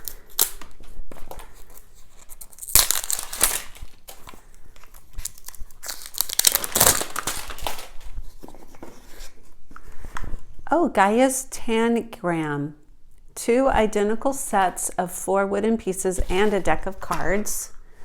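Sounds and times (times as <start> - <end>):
plastic wrapping crinkling and tearing: 0.0 - 9.4.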